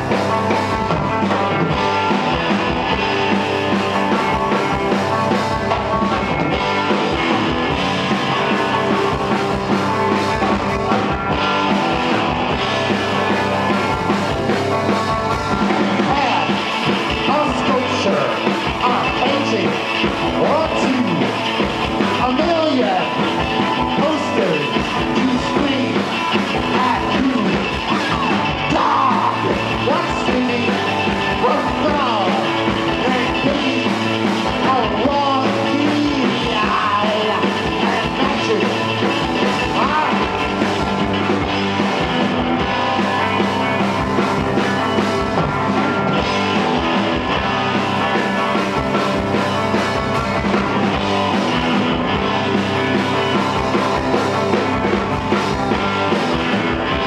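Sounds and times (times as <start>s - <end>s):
rock band playing live: 0.0s - 57.0s
person singing: 15.8s - 40.8s.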